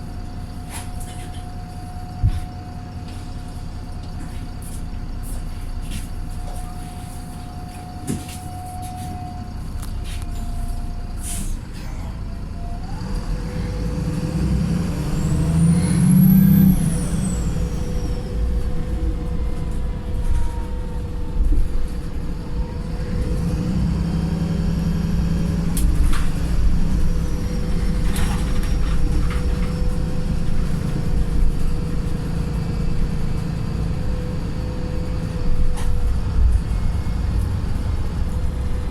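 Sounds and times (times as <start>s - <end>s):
bus diesel engine: 0.0s - 38.9s.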